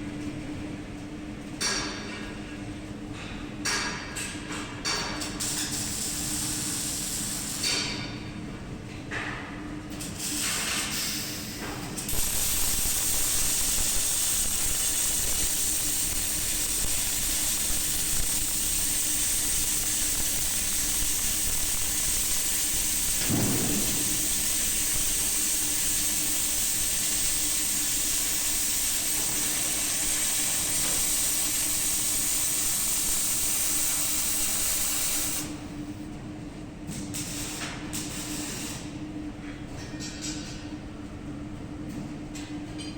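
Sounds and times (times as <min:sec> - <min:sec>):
welding arc hissing and crackling: 0:05.2 - 0:07.8, 0:10.0 - 0:35.7, 0:37.0 - 0:39.0
low machine hum: 0:11.2 - 0:42.9.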